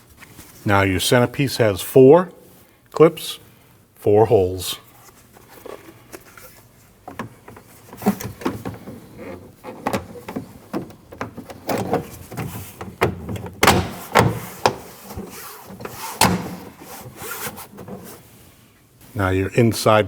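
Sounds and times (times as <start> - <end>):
plastic trim panel knocks and clicks: 12.8 - 14.9.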